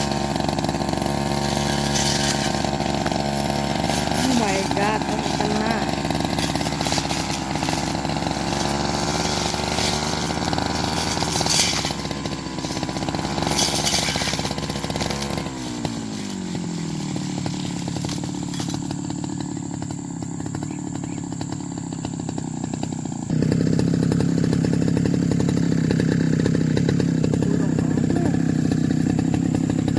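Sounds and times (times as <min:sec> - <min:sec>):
grass cutter engine revving: 0:00.0 - 0:29.9.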